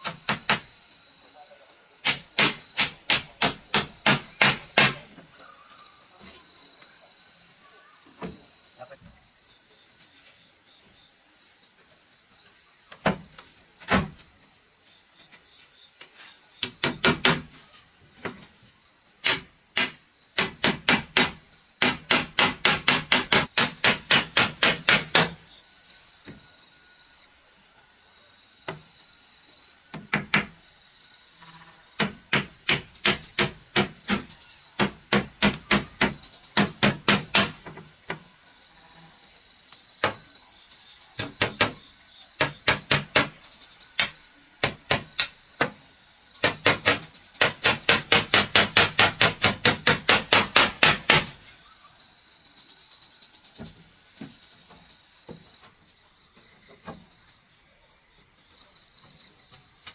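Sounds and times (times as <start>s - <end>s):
insects chirring: 0.0s - 59.9s
hammer blows on wood: 2.0s - 5.1s, 19.2s - 25.4s, 46.4s - 51.4s.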